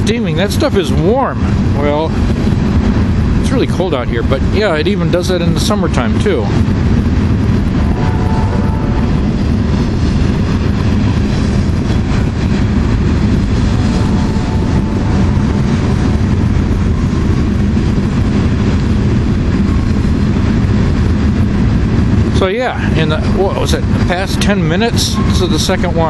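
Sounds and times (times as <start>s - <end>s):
freight train rumbling past: 0.0s - 26.0s.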